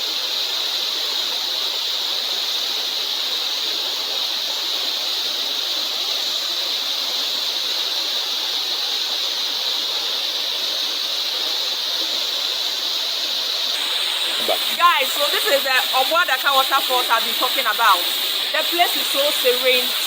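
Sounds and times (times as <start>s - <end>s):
waterfall rushing: 13.7s - 20.0s.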